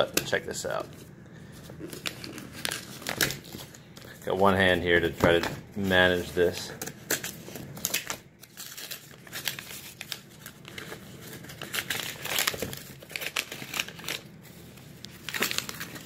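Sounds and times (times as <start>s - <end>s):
packaging crinkling: 1.7s - 4.5s, 5.8s - 16.0s
packaging ripping: 1.8s - 3.8s, 6.2s - 14.3s, 15.0s - 16.0s.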